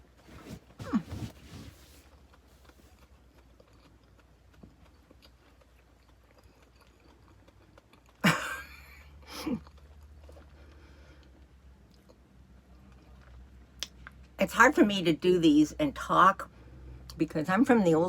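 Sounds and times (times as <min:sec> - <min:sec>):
faint chewing of soft candy: 0:00.0 - 0:14.4.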